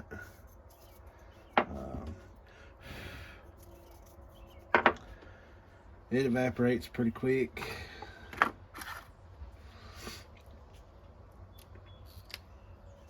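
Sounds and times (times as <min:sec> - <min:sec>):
person blowing a puff of breath: 0:02.8 - 0:03.5.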